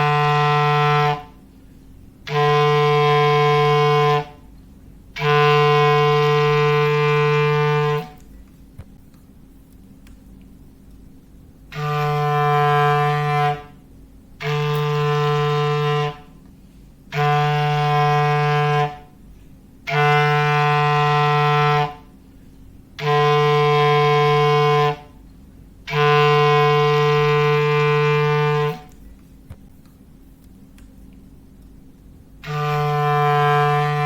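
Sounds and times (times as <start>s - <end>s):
foghorn blasts: 0.0s - 1.6s, 2.2s - 8.3s, 11.7s - 29.0s, 32.4s - 34.0s.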